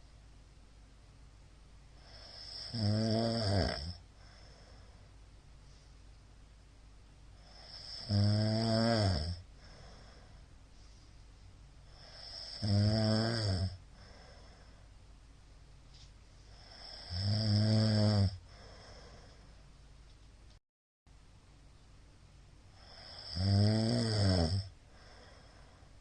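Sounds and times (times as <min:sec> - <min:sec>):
quiet breathing: 0:01.8 - 0:06.4, 0:07.3 - 0:12.8, 0:13.7 - 0:19.8, 0:22.6 - 0:23.6, 0:24.6 - 0:26.0
man snoring loudly: 0:02.0 - 0:04.0, 0:07.4 - 0:09.8, 0:11.9 - 0:13.8, 0:16.6 - 0:19.1, 0:22.8 - 0:25.3.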